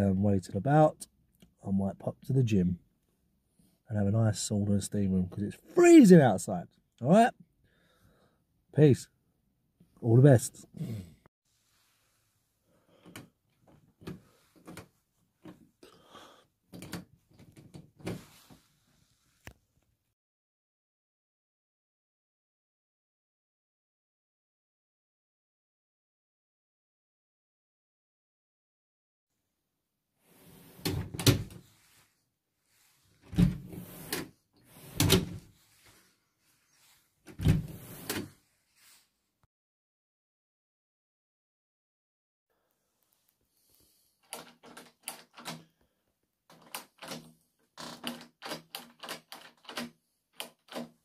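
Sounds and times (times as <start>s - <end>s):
door latch clicks: 46.5s - 47.3s.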